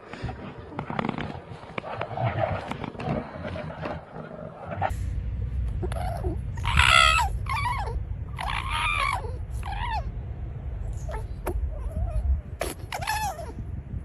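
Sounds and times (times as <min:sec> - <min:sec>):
steady low rumble: 0:00.0 - 0:14.0
animal calling: 0:05.8 - 0:10.2, 0:10.9 - 0:13.6.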